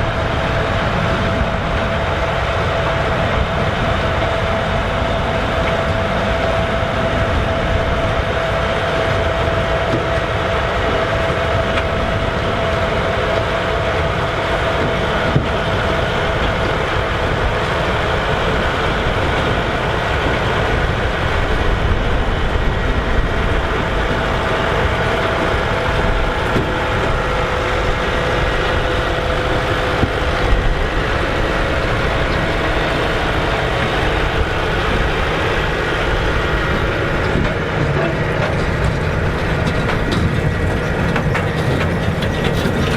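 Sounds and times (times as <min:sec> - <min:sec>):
tractor diesel engine droning: 0:00.0 - 0:42.9
machinery knocks: 0:25.3 - 0:30.9, 0:36.6 - 0:42.9.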